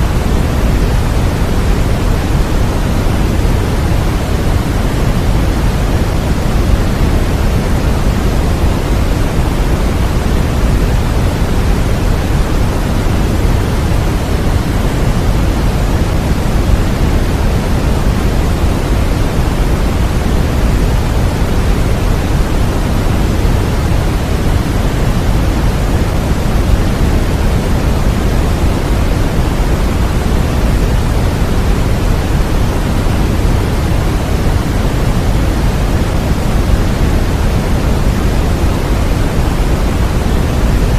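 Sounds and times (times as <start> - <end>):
white noise rush: 0.0 - 40.9.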